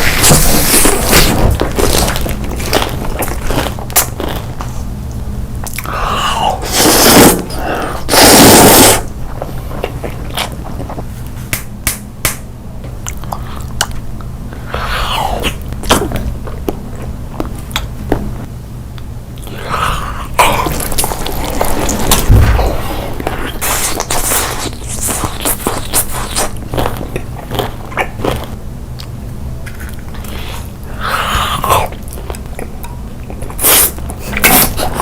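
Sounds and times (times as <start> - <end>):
steady low hum: 0.0 - 35.0
person chewing food: 5.6 - 11.3, 19.4 - 35.0.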